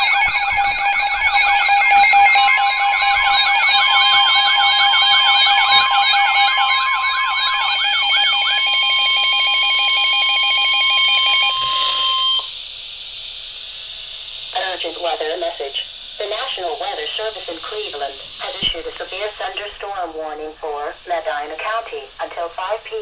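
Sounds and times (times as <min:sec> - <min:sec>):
warbling alert tone: 0:00.0 - 0:09.6.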